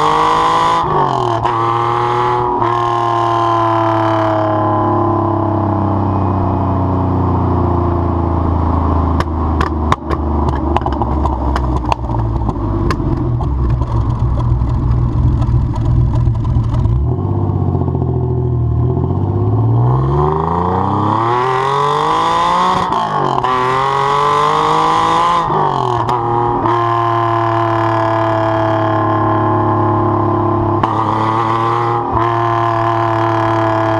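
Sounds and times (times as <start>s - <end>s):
car engine through exhaust: 0.0s - 33.9s
exhaust pops and cracks: 9.2s - 17.1s.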